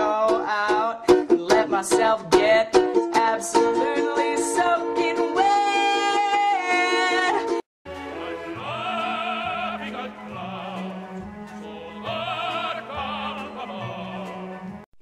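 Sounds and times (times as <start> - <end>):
operatic singing with vibrato: 0.0 - 14.8
orchestral held notes: 7.9 - 14.6.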